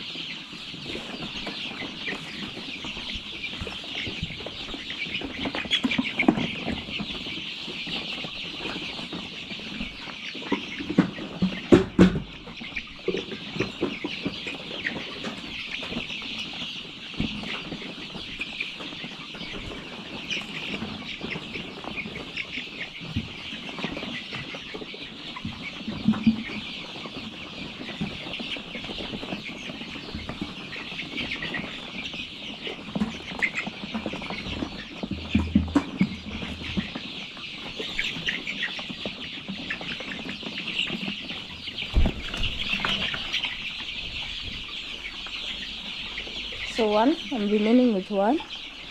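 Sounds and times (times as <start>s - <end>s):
chicks cheeping: 0.0s - 48.9s
knocks and clatters: 35.0s - 36.9s.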